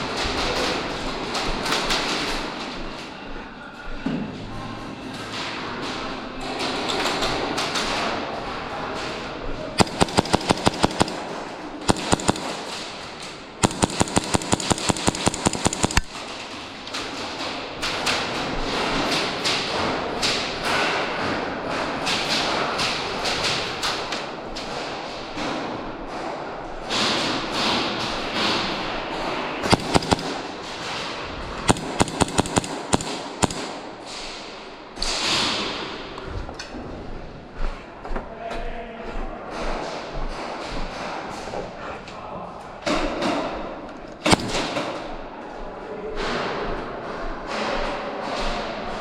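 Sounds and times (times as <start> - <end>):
airsoft gun firing bursts: 9.8 - 16.4, 29.6 - 34.5, 44.2 - 45.0.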